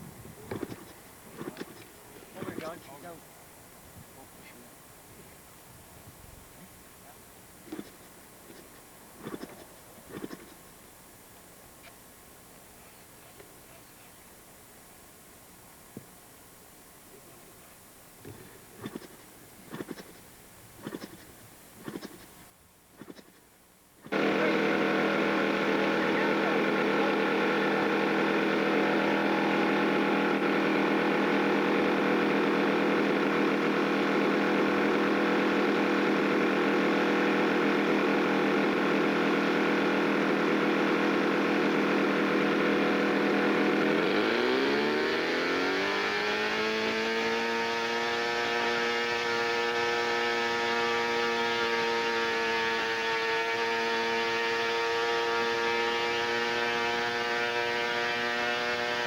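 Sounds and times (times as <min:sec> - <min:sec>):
model airplane engine running: 0:24.1 - 0:59.0.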